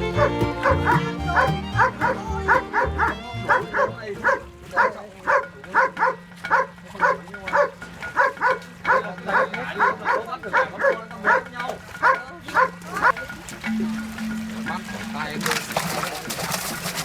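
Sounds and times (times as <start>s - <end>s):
dog barking rapidly: 2.8s - 11.4s.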